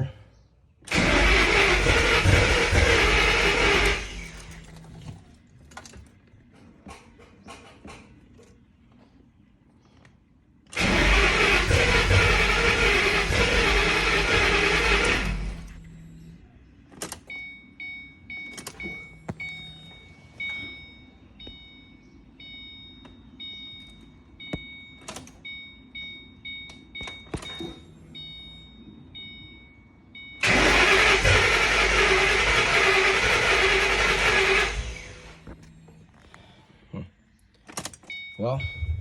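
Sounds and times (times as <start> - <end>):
car engine cranking: 0.9 - 8.1, 10.7 - 17.5, 30.4 - 36.4
car warning chime beeping: 11.0 - 36.2, 38.0 - 39.0.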